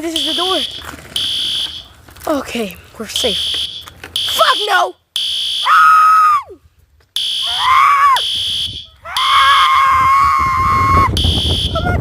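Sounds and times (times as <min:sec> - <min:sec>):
piercing alarm beeps: 0:00.0 - 0:01.9, 0:03.2 - 0:05.7, 0:07.2 - 0:09.7, 0:11.2 - 0:11.8
high-pitched screams: 0:05.6 - 0:06.6, 0:07.4 - 0:08.2, 0:08.8 - 0:12.0.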